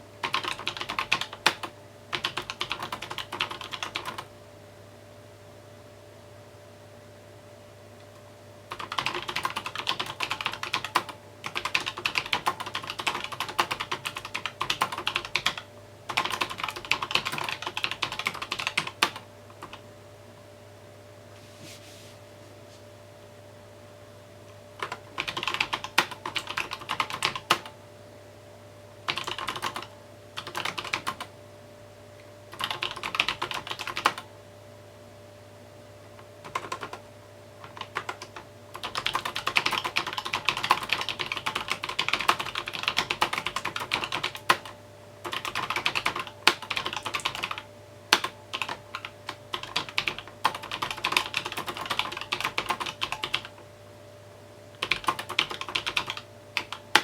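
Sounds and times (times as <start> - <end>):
faint steady hum: 0.0 - 57.0
mechanical keyboard typing: 0.2 - 4.3, 8.7 - 19.8, 24.8 - 27.8, 29.1 - 31.3, 32.5 - 34.3, 36.4 - 37.0, 37.6 - 53.6, 54.8 - 57.0.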